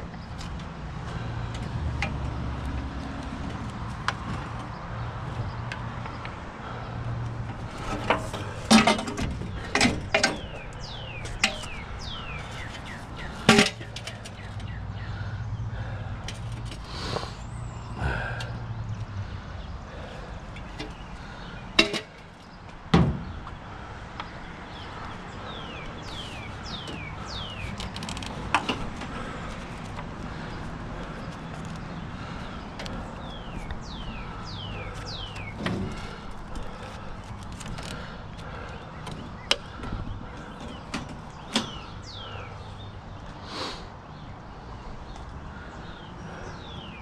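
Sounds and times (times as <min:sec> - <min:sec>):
scrap metal knocks and clanks: 0:07.5 - 0:14.8, 0:21.7 - 0:22.3, 0:33.9 - 0:38.0.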